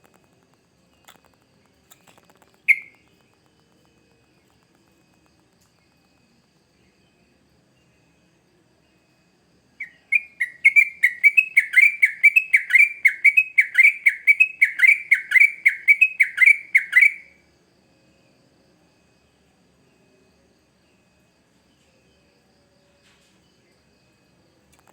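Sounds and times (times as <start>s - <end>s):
bird singing whistled notes: 2.5s - 3.2s, 9.8s - 17.4s.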